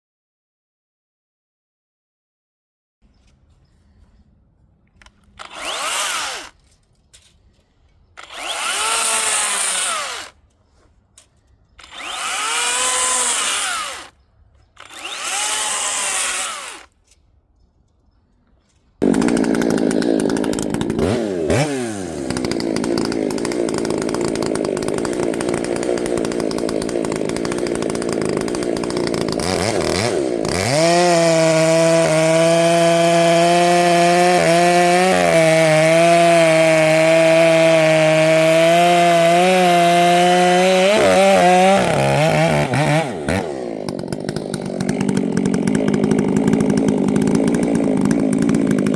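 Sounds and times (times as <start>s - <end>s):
chainsaw running: 5.0s - 6.6s, 8.2s - 10.4s, 11.8s - 17.0s, 19.0s - 48.9s.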